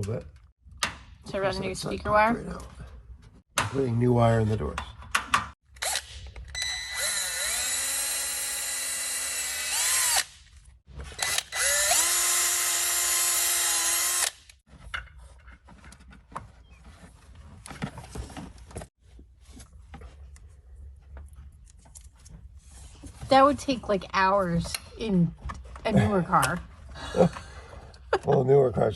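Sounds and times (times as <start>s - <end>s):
power drill running: 6.6s - 10.3s, 11.2s - 14.4s.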